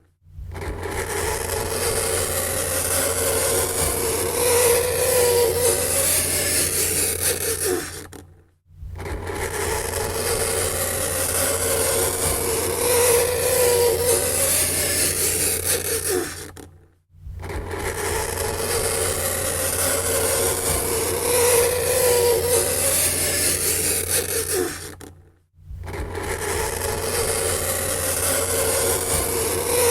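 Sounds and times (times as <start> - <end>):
fingernails scraping chalkboard: 9.0 - 16.6.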